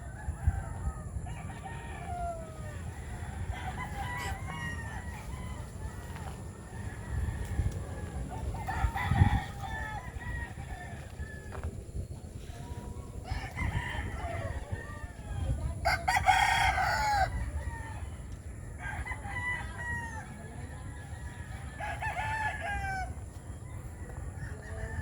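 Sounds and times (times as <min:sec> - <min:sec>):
roosters crowing: 0:00.0 - 0:25.0
steady low rumble: 0:02.2 - 0:16.1.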